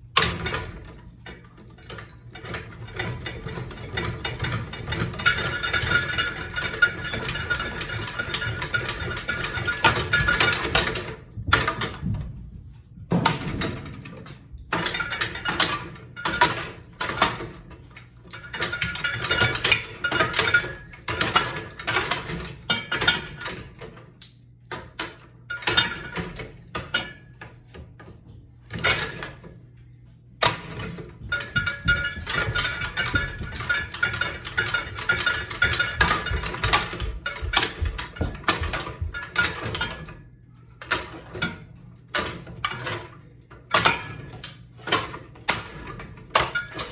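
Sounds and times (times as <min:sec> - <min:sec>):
low steady hum: 0:00.0 - 0:46.9
metallic clattering and banging: 0:00.0 - 0:46.9.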